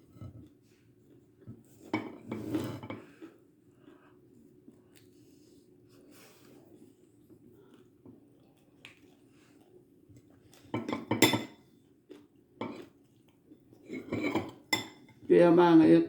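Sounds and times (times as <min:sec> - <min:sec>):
dishes and cutlery clinking: 0:01.8 - 0:03.2, 0:10.7 - 0:11.6, 0:12.6 - 0:12.9, 0:13.8 - 0:15.3.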